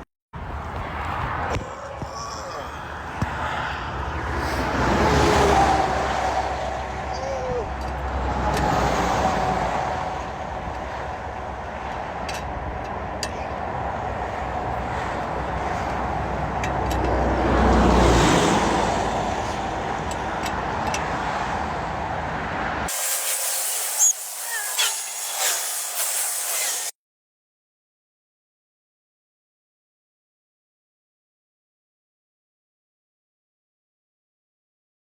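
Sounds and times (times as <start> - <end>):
highway traffic rushing: 0.4 - 26.9
vehicle passing: 0.4 - 26.9
thin hiss: 22.9 - 26.9
short chirps and knocks: 23.0 - 26.9.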